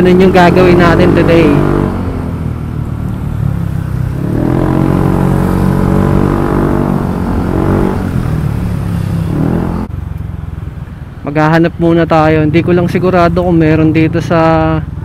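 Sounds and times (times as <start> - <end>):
scooter engine revving: 0.0 - 9.9.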